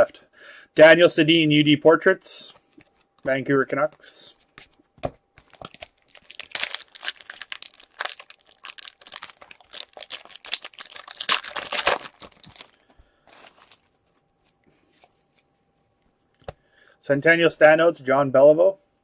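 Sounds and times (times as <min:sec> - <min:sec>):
card pack wrapper tearing and crinkling: 0:05.4 - 0:13.9.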